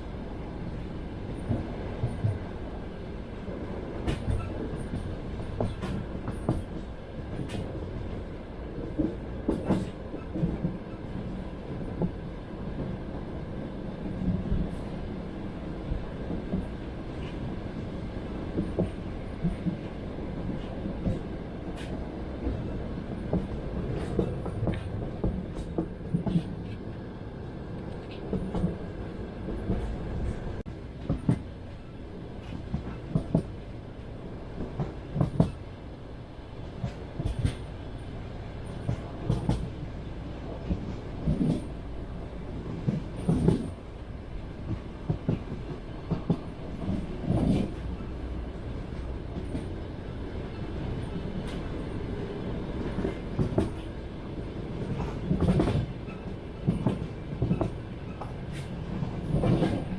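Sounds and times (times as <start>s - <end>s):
low train rumble: 0.0s - 59.9s
train wheels clattering over joints: 42.7s - 43.8s, 44.7s - 48.1s.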